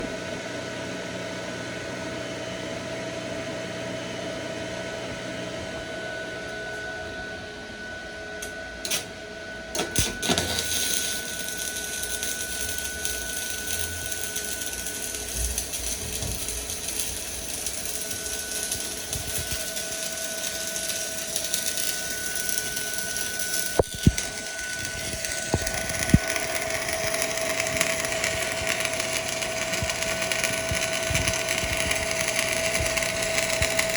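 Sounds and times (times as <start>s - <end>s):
welding machine whine: 0.0s - 33.9s
arc welding crackling hiss: 8.4s - 9.1s, 9.8s - 33.9s.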